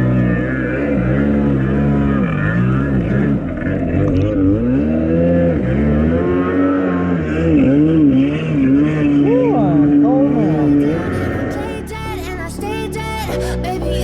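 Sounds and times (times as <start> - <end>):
jet ski engine revving: 0.0 - 10.5.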